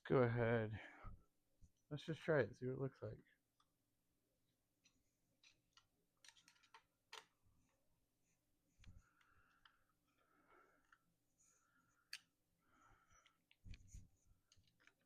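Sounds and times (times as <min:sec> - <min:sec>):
small parts clicking and tapping: 0:04.8 - 0:07.3, 0:14.4 - 0:15.0.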